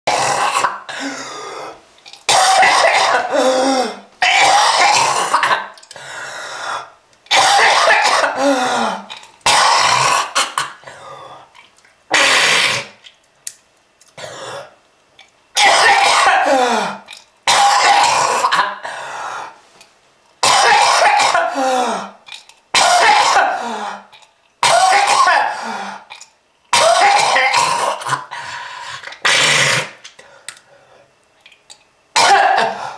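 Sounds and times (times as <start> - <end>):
person coughing hard: 0.1 - 1.4, 2.3 - 5.8, 7.3 - 11.0, 12.1 - 13.0, 15.6 - 19.0, 20.4 - 22.2, 22.8 - 26.1, 26.7 - 28.4, 29.2 - 30.0, 32.2 - 32.9.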